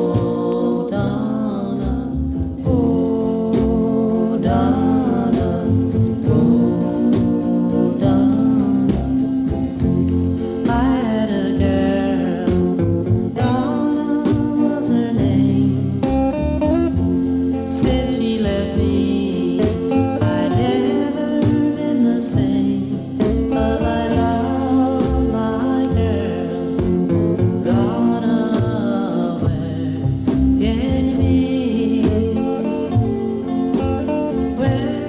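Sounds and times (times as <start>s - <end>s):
song with singing over beat: 0.0s - 35.0s.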